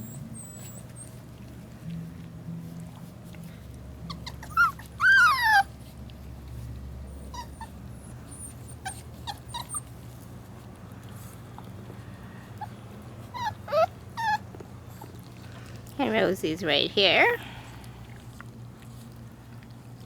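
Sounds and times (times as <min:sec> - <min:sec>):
puppy yipping faintly: 0:00.0 - 0:01.2, 0:04.1 - 0:05.7, 0:07.1 - 0:09.9, 0:12.6 - 0:15.2
puppy whining: 0:00.0 - 0:10.6, 0:11.2 - 0:15.8.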